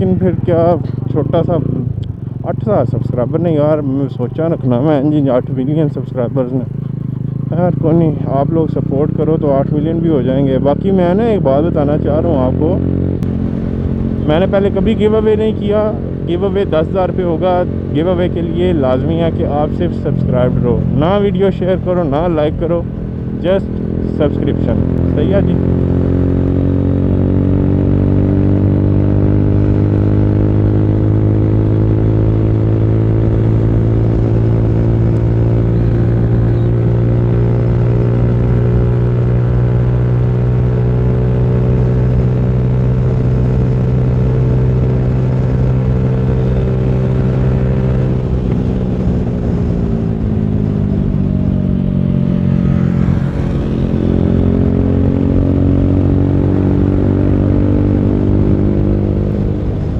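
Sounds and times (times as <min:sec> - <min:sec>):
motorcycle engine running: 0:00.0 - 0:59.9.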